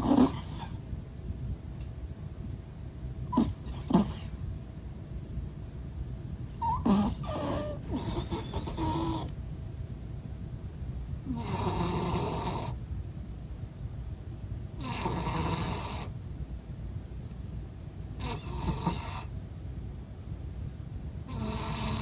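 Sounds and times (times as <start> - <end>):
cat snoring loudly: 0.0 - 0.8, 3.3 - 4.4, 6.5 - 9.3, 11.3 - 12.8, 14.8 - 16.1, 18.2 - 19.3, 21.3 - 22.0.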